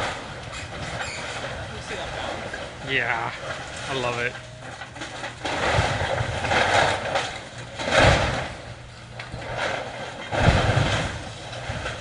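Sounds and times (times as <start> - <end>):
debris crashing and crunching: 0.0 - 12.0.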